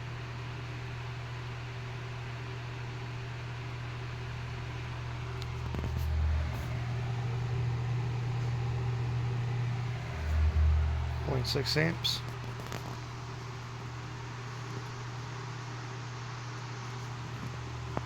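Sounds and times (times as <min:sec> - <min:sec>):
electric fan humming: 0:04.2 - 0:18.0
low rumbles: 0:05.6 - 0:13.2.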